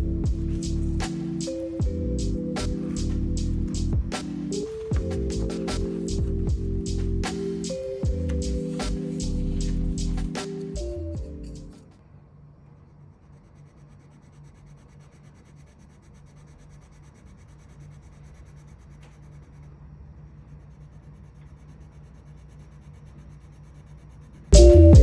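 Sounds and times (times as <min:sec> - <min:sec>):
pencil scratching on paper: 0:08.3 - 0:10.6, 0:13.2 - 0:24.5.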